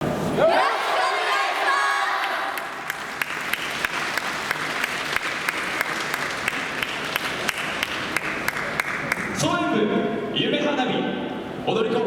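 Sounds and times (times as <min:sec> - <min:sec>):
audience applauding: 0:01.4 - 0:09.4
rhythmic sharp claps: 0:02.0 - 0:09.5.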